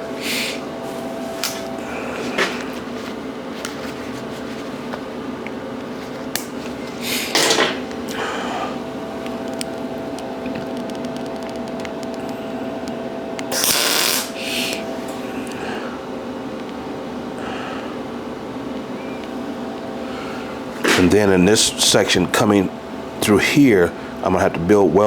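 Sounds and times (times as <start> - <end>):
steady machine hum: 0.0 - 25.0
wire welding crackle: 13.5 - 14.4.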